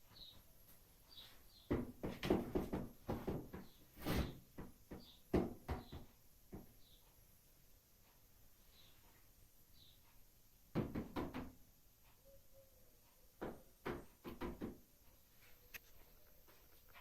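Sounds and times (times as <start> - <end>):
knocks or thumps: 10.7 - 11.6.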